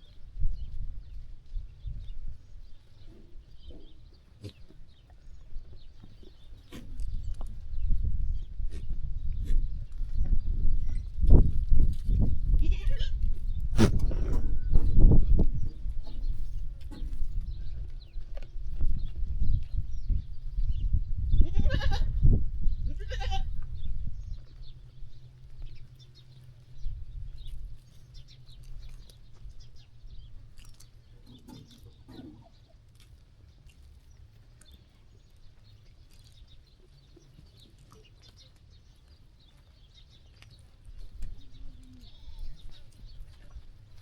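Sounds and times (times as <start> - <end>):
sheep bleating: 12.6 - 13.2, 21.4 - 22.1.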